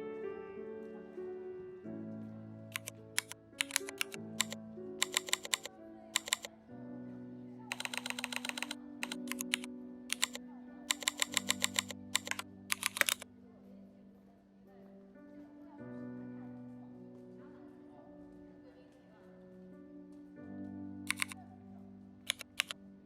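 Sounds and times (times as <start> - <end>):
keyboard typing: 2.7 - 6.5, 7.7 - 13.3, 21.1 - 21.4, 22.2 - 22.8.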